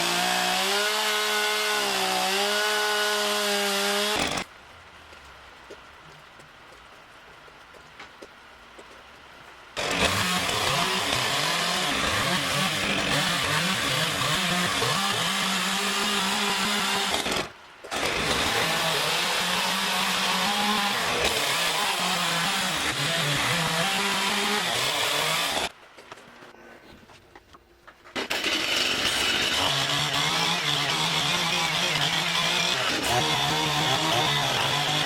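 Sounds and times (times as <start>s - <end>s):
chainsaw cutting wood: 0.0s - 4.5s, 9.8s - 25.8s, 28.1s - 35.0s.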